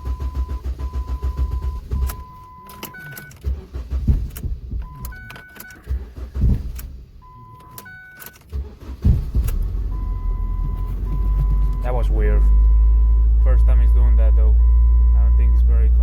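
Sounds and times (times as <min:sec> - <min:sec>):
car engine cutting out: 0:00.0 - 0:07.4, 0:08.3 - 0:13.6
low thuds: 0:03.5 - 0:05.3, 0:06.2 - 0:07.2, 0:08.9 - 0:15.1.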